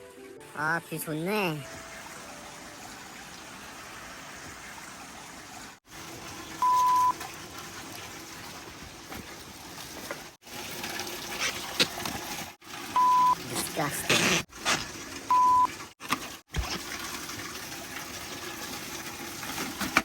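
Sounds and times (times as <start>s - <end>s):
water running and trickling: 0.9s - 20.0s
short steady beep: 6.6s - 7.1s, 13.0s - 13.4s, 15.3s - 15.7s.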